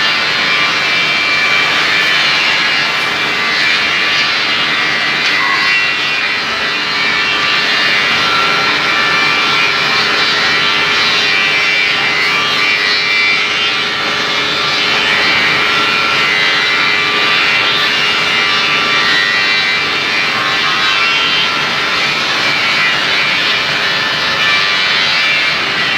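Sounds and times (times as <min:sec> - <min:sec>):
machine whirring hiss: 0:00.2 - 0:05.5.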